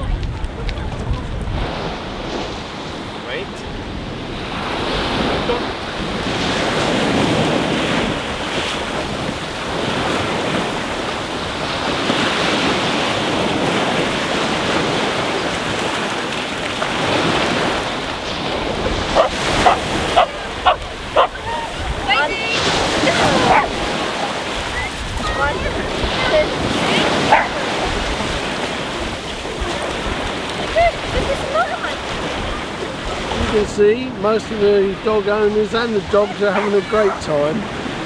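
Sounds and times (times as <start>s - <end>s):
sea waves washing: 0.0s - 38.0s
wind buffeting microphone: 0.0s - 38.0s
dog barking: 19.0s - 24.4s, 27.0s - 28.0s.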